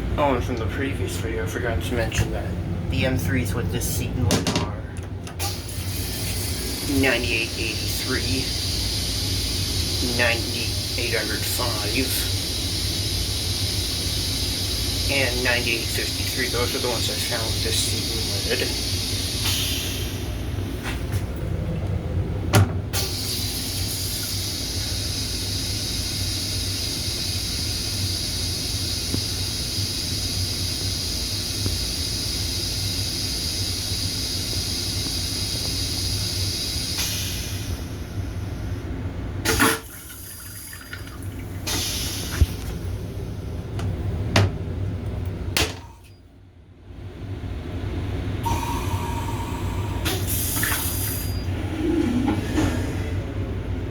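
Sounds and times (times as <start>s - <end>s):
railcar rumble: 0.0s - 39.4s, 47.3s - 53.9s
toilet flushing water rush: 5.4s - 38.8s, 39.4s - 43.7s, 48.3s - 53.9s
toilet flush click: 39.4s - 42.8s, 50.0s - 53.1s.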